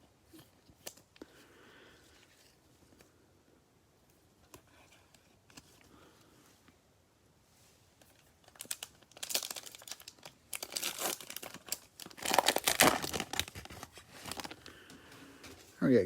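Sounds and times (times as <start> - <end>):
wrapper crinkling and tearing: 8.1 - 14.9.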